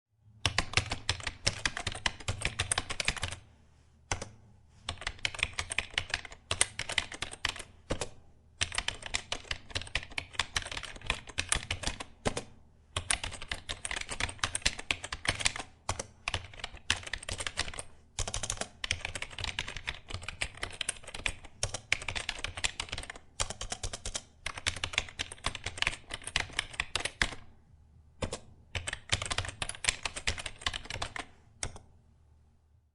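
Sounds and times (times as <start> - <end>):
computer keyboard typing: 0.4 - 3.4, 4.1 - 27.5, 28.2 - 31.9.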